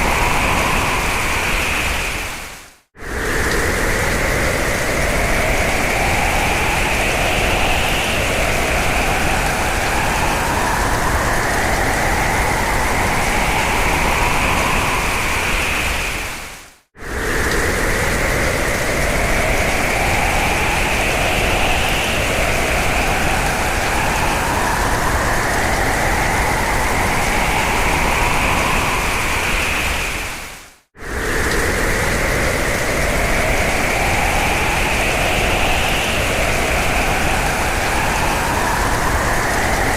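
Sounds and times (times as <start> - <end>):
howling whistling wind: 0.0 - 39.9.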